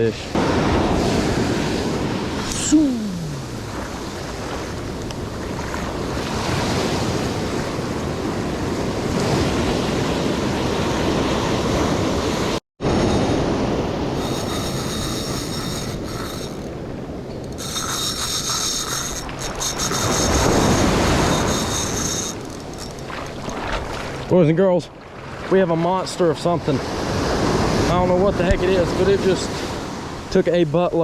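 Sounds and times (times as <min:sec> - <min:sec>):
ocean surf breaking: 0:00.0 - 0:30.4
wind buffeting microphone: 0:00.4 - 0:24.3.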